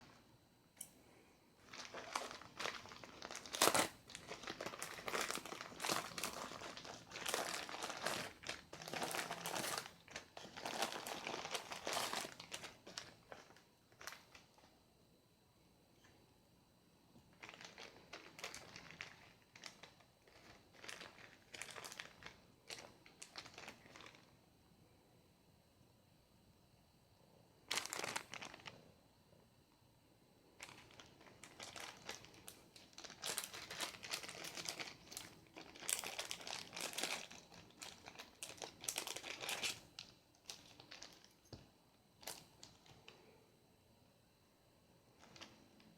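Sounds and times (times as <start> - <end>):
packaging crinkling and rustling: 1.6 - 14.7, 17.3 - 24.3, 27.7 - 28.8, 30.6 - 41.6, 42.2 - 43.2, 45.2 - 45.9.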